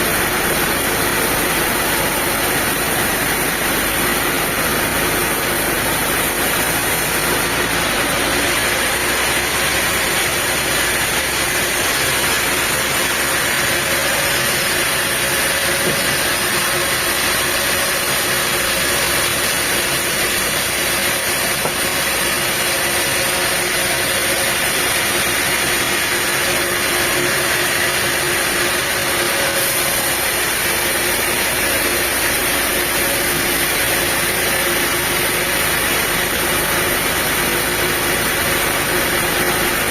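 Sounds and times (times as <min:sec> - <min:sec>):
sawmill machinery running: 0:00.0 - 0:39.9.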